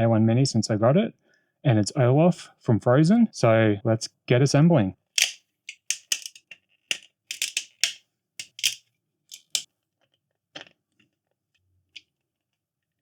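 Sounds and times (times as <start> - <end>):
plastic parts clicking together: 5.2 - 9.6.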